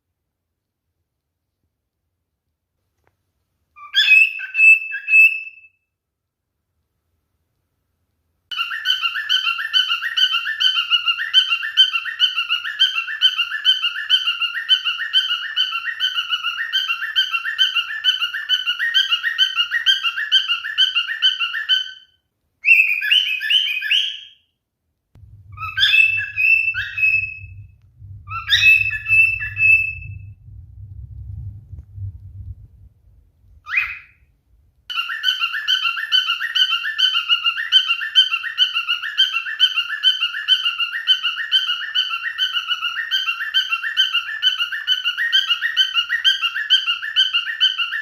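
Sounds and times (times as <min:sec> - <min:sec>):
cockatiel chirping and whistling: 0:03.8 - 0:05.8, 0:08.5 - 0:24.5, 0:25.5 - 0:30.4, 0:33.6 - 0:34.2, 0:34.9 - 0:48.0.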